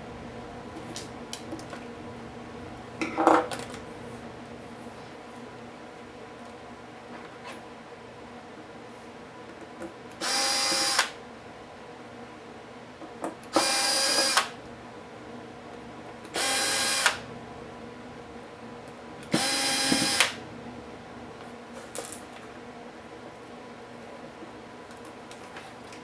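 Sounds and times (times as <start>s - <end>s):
electric screwdriver spinning: 13.6s - 14.4s, 16.4s - 17.2s, 19.4s - 20.4s.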